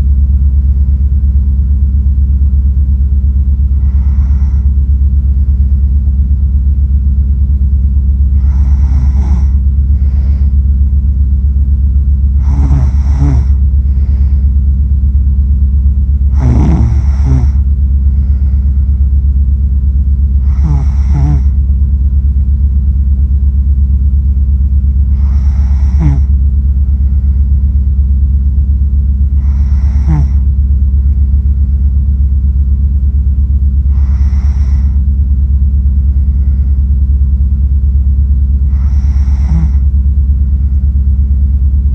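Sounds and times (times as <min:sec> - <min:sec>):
loud low rumble: 0:00.0 - 0:41.9
person snoring: 0:03.8 - 0:04.7, 0:08.3 - 0:10.6, 0:12.4 - 0:14.5, 0:16.3 - 0:18.8, 0:20.4 - 0:21.6, 0:25.1 - 0:26.4, 0:29.3 - 0:30.5, 0:33.9 - 0:35.0, 0:38.7 - 0:39.9.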